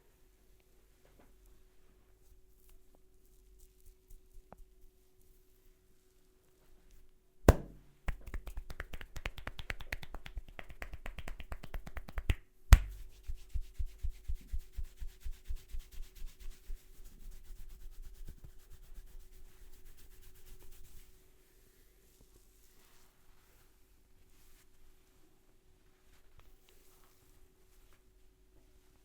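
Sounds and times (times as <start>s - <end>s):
hands snapping: 7.5s - 13.2s
hands tapping on head: 7.5s - 16.6s
hands rubbing: 7.5s - 21.1s.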